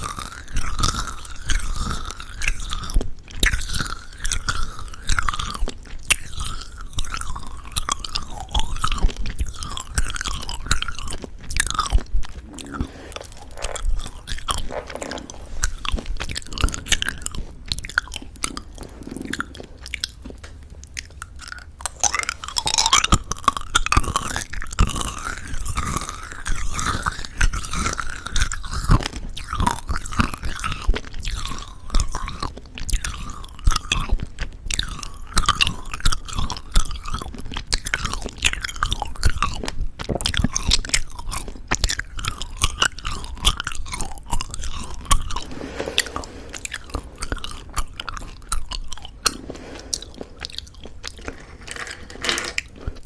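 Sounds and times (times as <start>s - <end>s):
chewing crunchy candy: 0.0s - 53.0s
wet mouth smacking: 9.8s - 24.0s.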